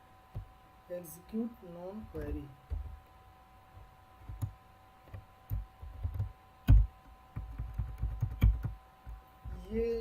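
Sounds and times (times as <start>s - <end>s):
faint electrical whine: 0.0s - 10.0s
computer keyboard keystrokes: 4.2s - 9.2s.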